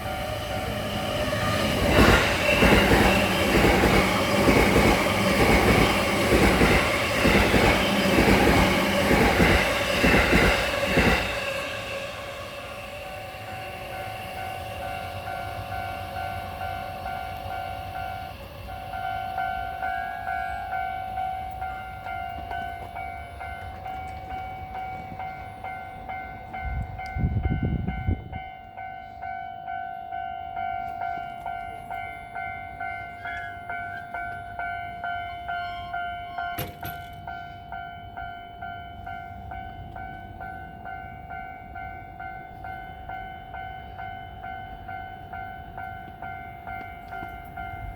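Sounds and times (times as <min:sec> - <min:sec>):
rumble of trains: 0:00.0 - 0:47.9
level crossing bell ringing: 0:15.3 - 0:47.9.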